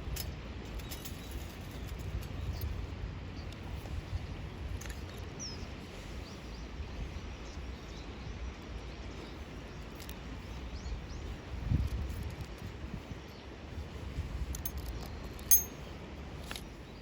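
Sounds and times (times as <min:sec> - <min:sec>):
small birds chirping: 0:00.8 - 0:12.0.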